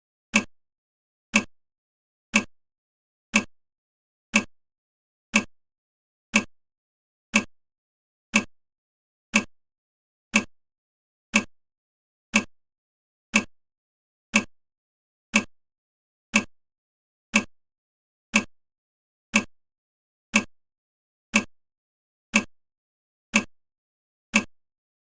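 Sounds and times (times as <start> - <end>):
clock-like timer ticks: 0.3 - 0.6, 1.3 - 1.6, 2.3 - 2.6, 3.3 - 3.6, 4.3 - 4.6, 5.3 - 5.6, 6.3 - 6.6, 7.3 - 7.6, 8.3 - 8.6, 9.3 - 9.6, 10.3 - 10.6, 11.3 - 11.6, 12.3 - 12.6, 13.3 - 13.6, 14.3 - 14.6, 15.3 - 15.6, 16.3 - 16.6, 17.3 - 17.6, 18.3 - 18.6, 19.3 - 19.6, 20.3 - 20.6, 21.3 - 21.6, 22.3 - 22.6, 23.3 - 23.6, 24.3 - 24.6.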